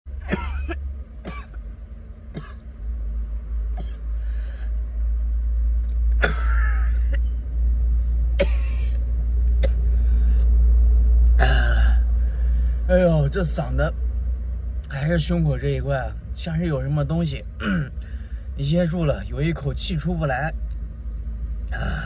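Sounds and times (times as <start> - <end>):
steady low rumble: 0.1 - 22.0
man coughing: 0.2 - 1.6, 2.3 - 2.6, 3.8 - 4.2, 6.2 - 7.2, 8.4 - 9.0, 9.6 - 9.9, 17.6 - 18.0.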